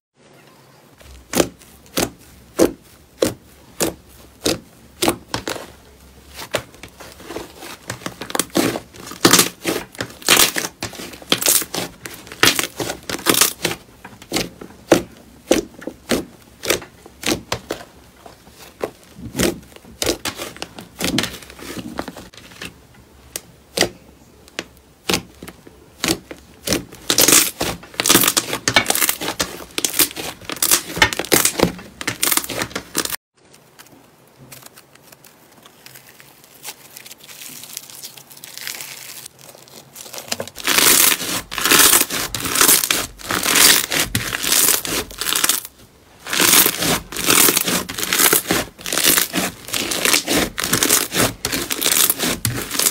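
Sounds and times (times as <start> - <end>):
slime crackling and popping: 1.1 - 17.8, 18.8 - 22.4, 23.3 - 33.9, 34.5 - 52.9.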